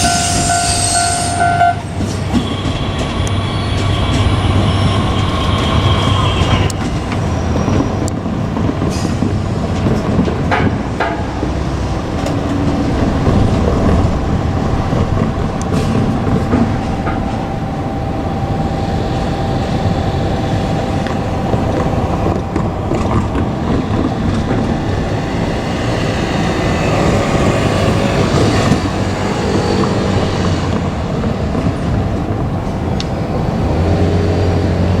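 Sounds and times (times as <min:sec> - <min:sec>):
steady high tone: 0:00.0 - 0:07.1
diesel railcar passing: 0:00.0 - 0:35.0.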